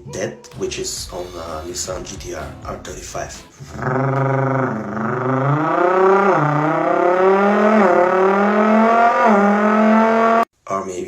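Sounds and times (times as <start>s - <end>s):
person imitating car engine: 3.5s - 10.4s.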